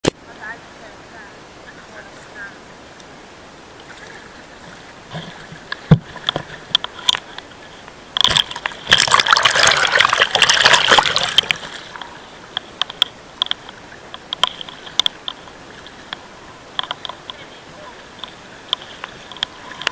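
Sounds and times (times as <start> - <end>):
water splashing and sloshing: 0.0 - 19.9
sharp knocks and clicks: 5.7 - 7.5, 10.4 - 17.4.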